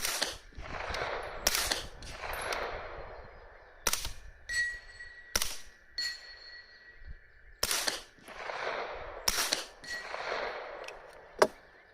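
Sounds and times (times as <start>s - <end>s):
suppressed gunshots: 0.0s - 4.3s, 5.3s - 5.8s, 7.6s - 11.6s
short ringing pings: 4.5s - 5.4s, 6.0s - 7.0s.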